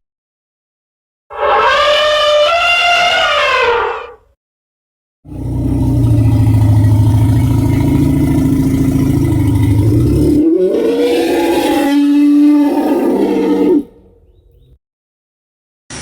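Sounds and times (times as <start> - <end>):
deep growl: 5.3 - 14.1.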